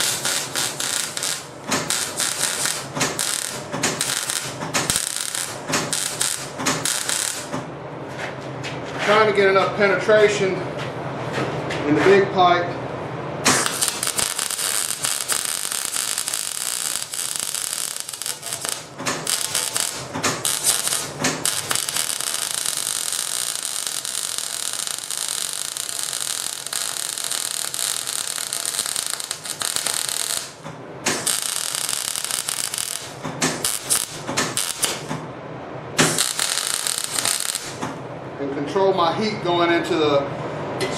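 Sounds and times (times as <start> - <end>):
arc welding crackle: 0.0 - 7.6, 13.5 - 35.1, 36.0 - 38.0.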